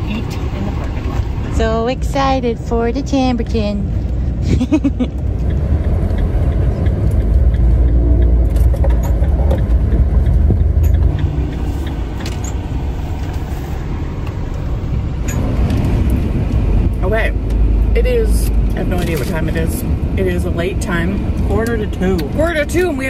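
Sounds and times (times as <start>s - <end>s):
van engine and road rumble: 0.0s - 23.0s
faint rattles and clicks: 5.2s - 13.4s.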